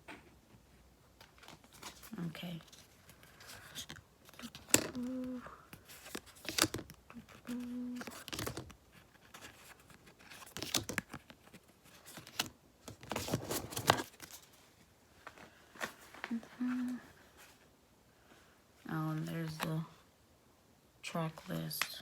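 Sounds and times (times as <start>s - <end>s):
paper and plastic rustling: 1.2s - 17.7s.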